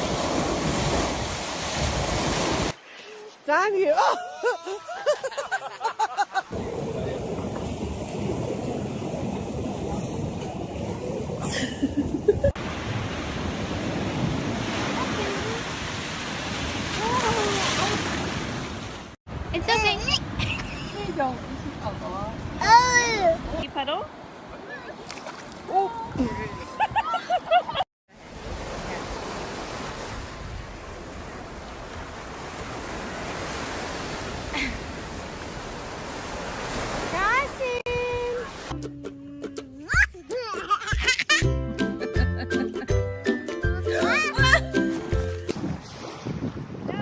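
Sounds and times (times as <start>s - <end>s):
ocean surf rushing: 0.0s - 3.1s, 3.7s - 25.0s, 25.7s - 38.8s
wind: 0.0s - 47.0s
wind on microphone: 6.5s - 15.6s, 45.5s - 47.0s.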